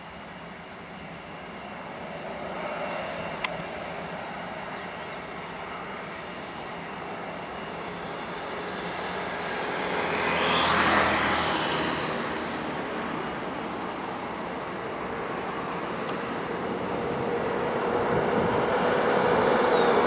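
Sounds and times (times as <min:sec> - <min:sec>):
vehicle passing by: 0:08.4 - 0:13.9, 0:16.8 - 0:20.0.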